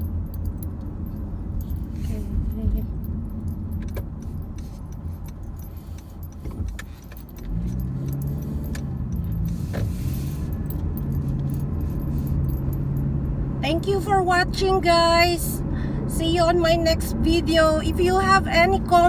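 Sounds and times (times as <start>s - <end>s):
jangling and clicking rattles: 0.0s - 13.6s
car road and engine rumble: 0.0s - 19.0s.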